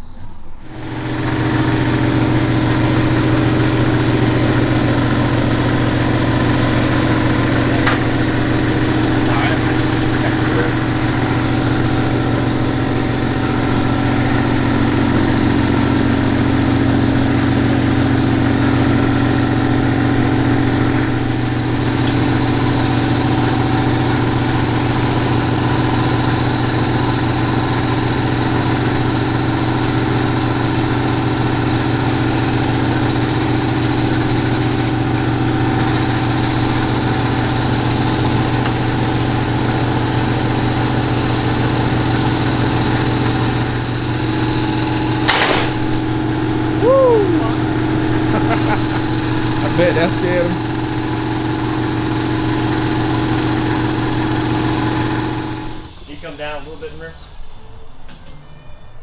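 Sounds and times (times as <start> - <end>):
engine idling: 0.0 - 57.3
thin high whine: 45.0 - 50.8, 55.7 - 59.0.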